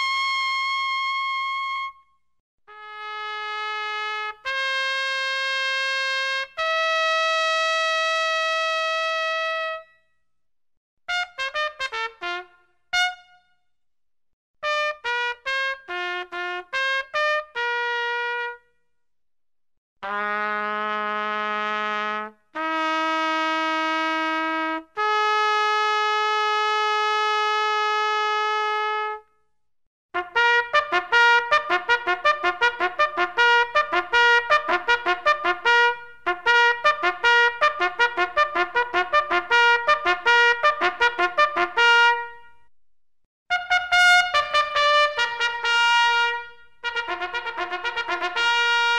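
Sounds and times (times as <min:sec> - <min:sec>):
solo trumpet playing: 0:00.0 - 0:02.1, 0:02.7 - 0:09.9, 0:11.1 - 0:13.5, 0:14.6 - 0:18.6, 0:20.0 - 0:29.3, 0:30.2 - 0:42.7, 0:43.5 - 0:48.9.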